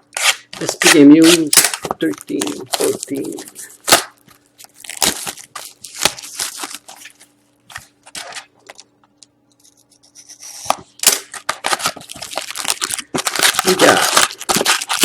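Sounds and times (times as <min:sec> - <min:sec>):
scraping and crinkling: 0:00.1 - 0:15.0
cardboard snapping: 0:00.2 - 0:07.0, 0:10.6 - 0:15.0.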